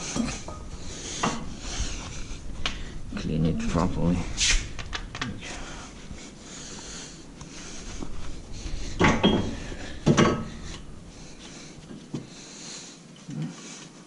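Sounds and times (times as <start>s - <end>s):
soft hiss: 0.0s - 14.0s
loud metal clanks: 9.0s - 10.6s.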